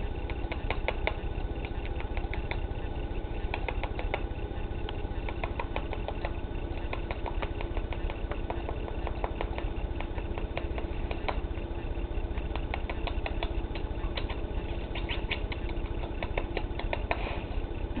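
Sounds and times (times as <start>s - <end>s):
beak nibbling and tapping: 0.0s - 17.8s
low rumble and hum: 0.0s - 18.0s.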